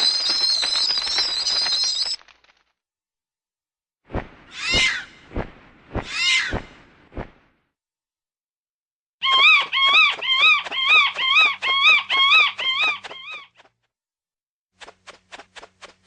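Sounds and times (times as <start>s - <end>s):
shrill falling screeches: 0.0s - 2.2s, 9.2s - 13.5s
fruit bat chattering squeals: 9.2s - 13.5s.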